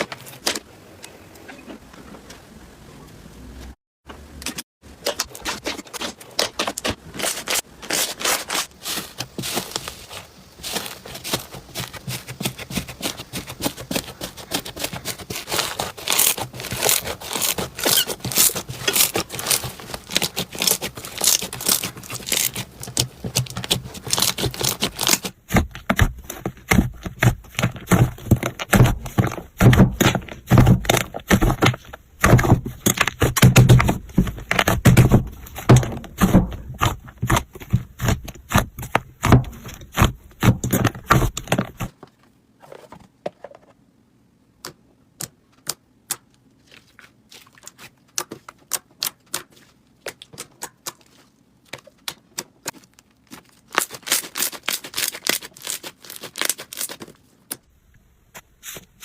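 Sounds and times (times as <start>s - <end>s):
slime squeezed crackling and popping: 16.0s - 25.3s.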